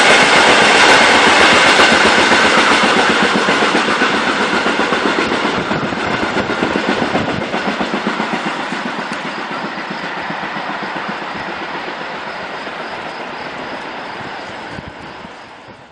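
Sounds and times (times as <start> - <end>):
train wheels clattering over rail joints: 0.0 - 15.9.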